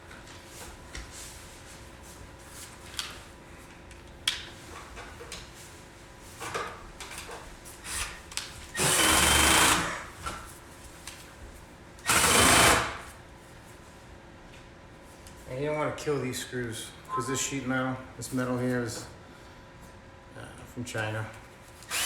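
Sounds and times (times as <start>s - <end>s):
drill driving screws into metal: 8.8s - 10.1s, 12.0s - 13.0s.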